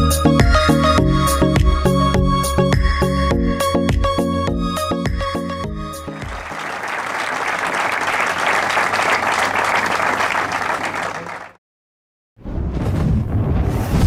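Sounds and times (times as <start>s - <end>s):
spectators applauding: 6.1s - 11.6s.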